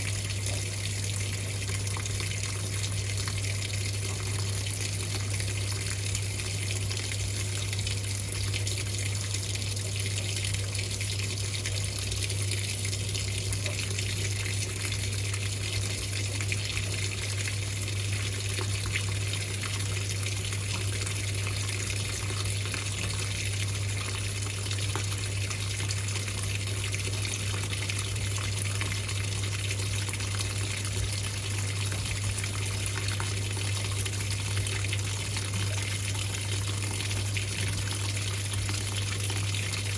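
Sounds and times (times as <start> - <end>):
washing machine low hum: 0.0 - 39.9
water rushing in washing machine: 0.0 - 39.9.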